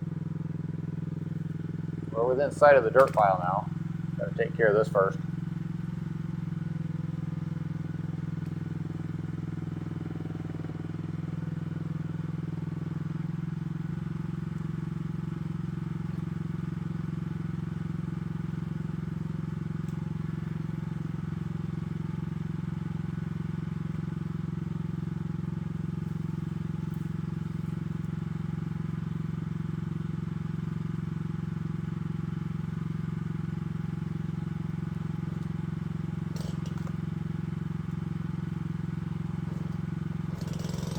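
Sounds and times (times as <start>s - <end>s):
excavator engine running: 0.0s - 11.5s, 34.6s - 40.9s.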